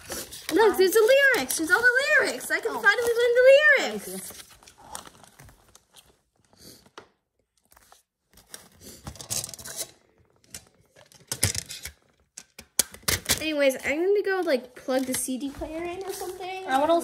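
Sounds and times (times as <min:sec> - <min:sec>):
paper or plastic crinkling: 0:00.0 - 0:06.9, 0:13.2 - 0:17.0.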